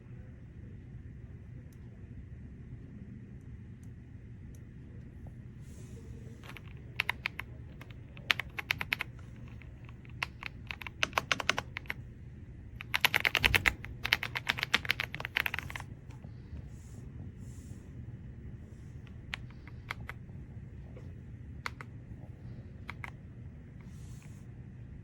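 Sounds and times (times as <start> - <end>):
mechanical keyboard keys clacking: 6.4 - 12.0, 12.8 - 15.9, 19.1 - 20.2, 21.7 - 21.9, 22.9 - 23.2.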